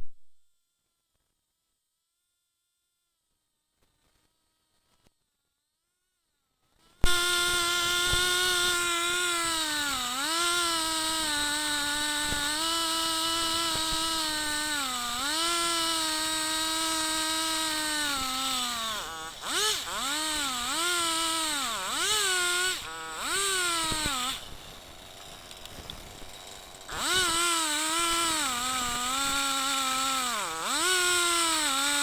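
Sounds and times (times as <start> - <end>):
chainsaw running at high revs: 6.7 - 32.0.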